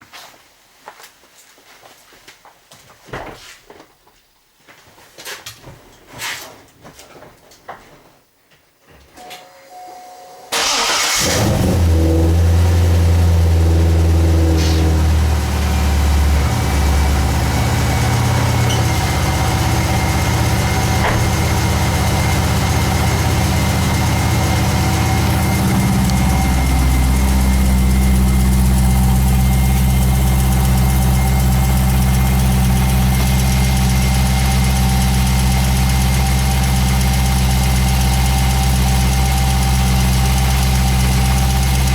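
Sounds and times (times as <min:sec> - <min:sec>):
car engine starting and idling: 0:10.5 - 0:41.9.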